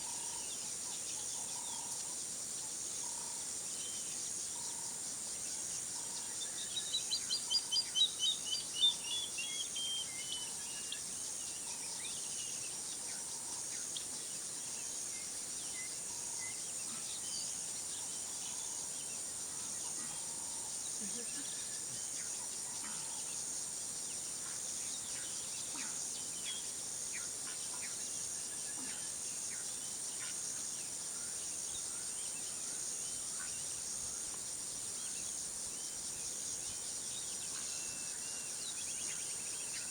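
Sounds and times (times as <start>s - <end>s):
faint chirps: 24.1s - 34.4s.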